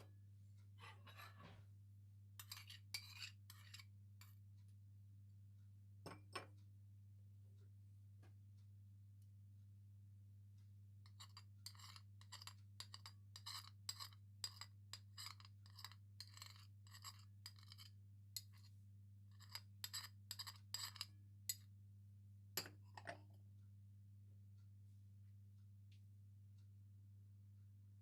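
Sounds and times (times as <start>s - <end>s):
utensil scraping a bowl: 0.8s - 1.6s, 2.4s - 4.4s, 11.0s - 21.7s.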